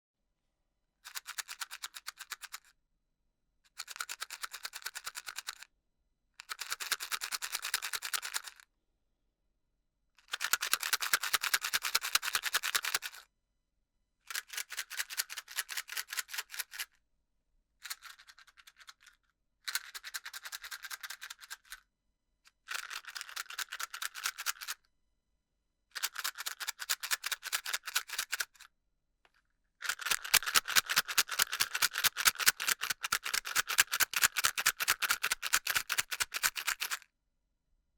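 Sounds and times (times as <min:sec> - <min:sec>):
matches rattling in matchbox: 0:17.9 - 0:21.8, 0:22.7 - 0:24.7, 0:26.0 - 0:28.6, 0:29.8 - 0:37.0.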